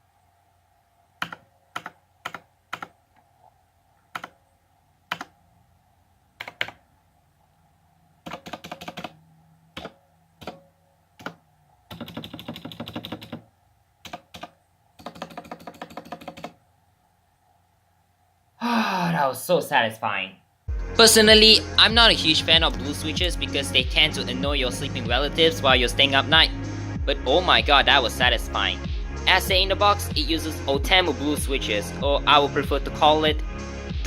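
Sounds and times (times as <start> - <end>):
mechanical keyboard typing: 1.2 - 3.0, 4.1 - 4.4, 5.1 - 5.3, 6.4 - 6.8, 8.2 - 9.2, 9.8 - 10.6, 11.2 - 16.6.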